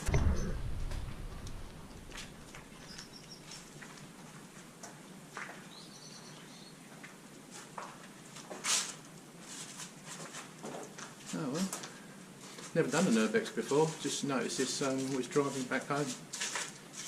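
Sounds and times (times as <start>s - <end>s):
faint footsteps crunching: 0.7s - 17.0s
high bird chirps: 2.8s - 3.7s.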